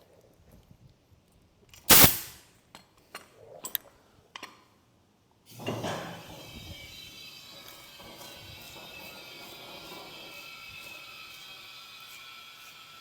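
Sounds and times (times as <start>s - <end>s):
compressed air hiss: 1.9s - 2.4s
steady hissing with faint tones: 1.9s - 2.4s.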